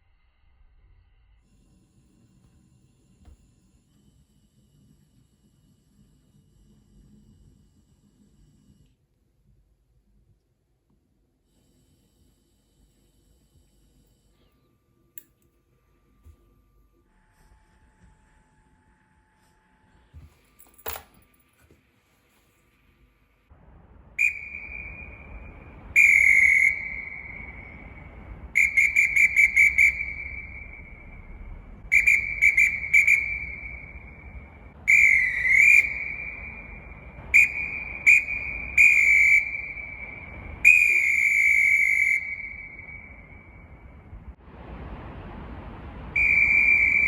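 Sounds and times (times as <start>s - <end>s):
referee whistle blasts: 24.2s - 44.0s, 46.2s - 47.0s.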